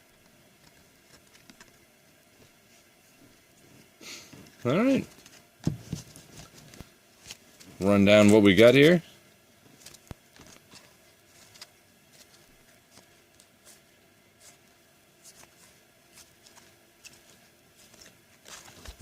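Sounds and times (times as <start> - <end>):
trading cards clicking and rustling: 0.2 - 1.8, 9.7 - 13.8, 15.3 - 19.0.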